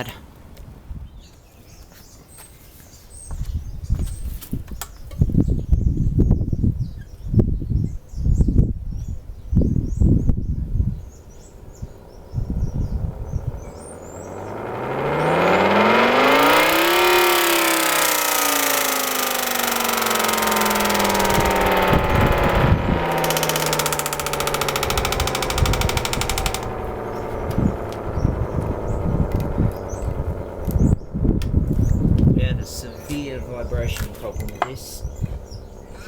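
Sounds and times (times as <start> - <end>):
air raid siren winding: 11.6 - 32.0.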